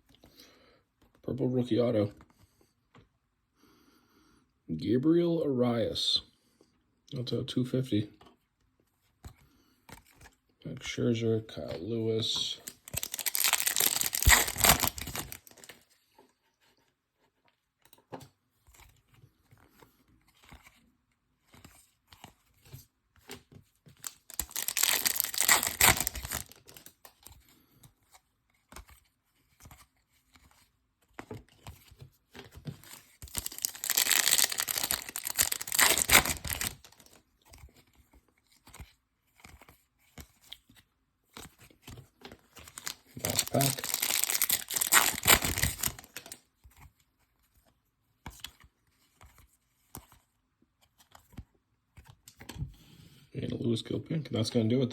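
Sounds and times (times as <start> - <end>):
card pack wrappers tearing: 12.3 - 15.8, 24.0 - 27.0, 32.8 - 37.2, 42.6 - 46.4
cards being handled clicks: 12.4 - 15.8, 24.0 - 27.0, 31.2 - 37.6.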